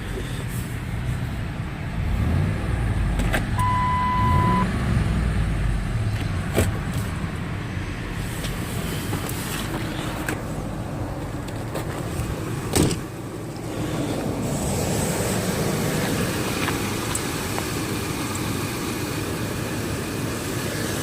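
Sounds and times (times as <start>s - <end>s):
car engine rumbling: 0.0s - 21.0s
electronic beep: 3.6s - 4.7s.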